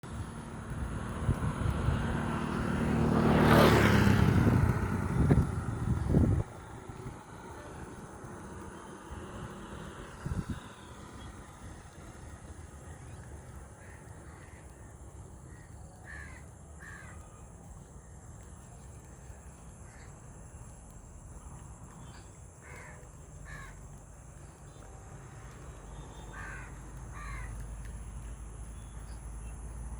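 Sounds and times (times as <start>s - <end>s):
crows cawing: 13.8s - 14.9s, 15.5s - 17.3s, 22.6s - 24.0s, 26.2s - 27.6s.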